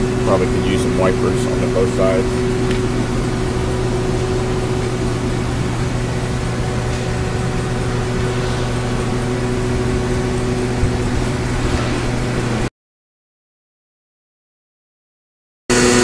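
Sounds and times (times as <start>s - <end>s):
machinery humming: 0.0s - 12.7s, 15.7s - 16.0s
steady tones: 0.0s - 12.7s.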